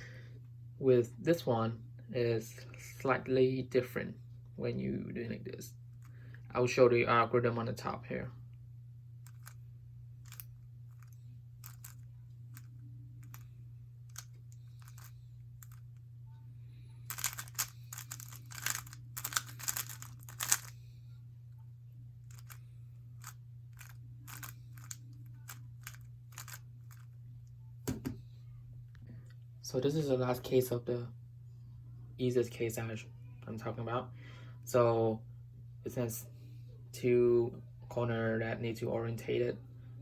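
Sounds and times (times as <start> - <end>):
steady low hum: 0.0 - 40.0
puzzle cube clicking: 17.1 - 20.7, 23.2 - 27.0.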